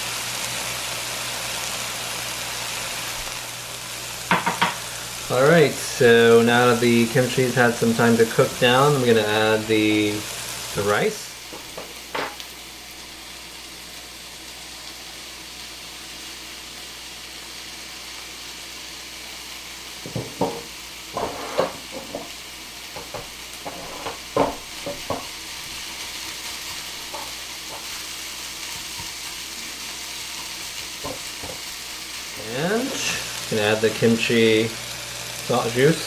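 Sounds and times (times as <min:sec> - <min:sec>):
food sizzling in a pan: 0:00.0 - 0:36.0
utensil knocking and scraping pan: 0:04.3 - 0:04.8, 0:11.5 - 0:12.4, 0:20.0 - 0:25.4, 0:27.0 - 0:28.0, 0:30.8 - 0:31.7.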